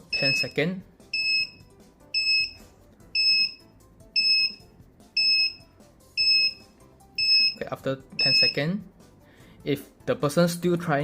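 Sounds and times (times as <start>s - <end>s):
short high-pitched buzzer beeps: 4.2s - 4.6s.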